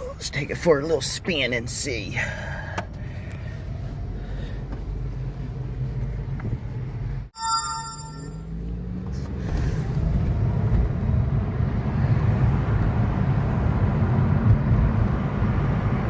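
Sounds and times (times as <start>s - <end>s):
car engine and road noise: 0.0s - 16.0s
brief high chime: 7.4s - 8.4s.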